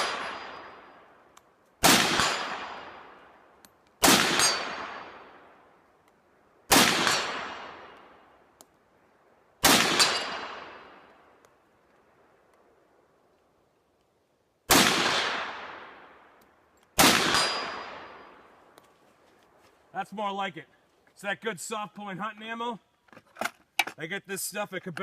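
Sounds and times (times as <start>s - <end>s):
rifle shots with echo: 0.0s - 0.9s, 1.8s - 3.3s, 4.0s - 5.6s, 6.7s - 8.1s, 9.6s - 11.1s, 14.7s - 16.2s, 17.0s - 18.5s.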